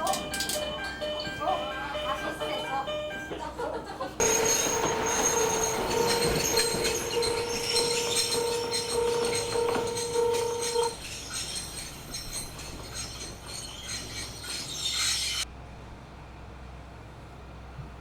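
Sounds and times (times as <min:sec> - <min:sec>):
train running on track: 0:00.0 - 0:18.0
wheels squealing: 0:04.2 - 0:15.5.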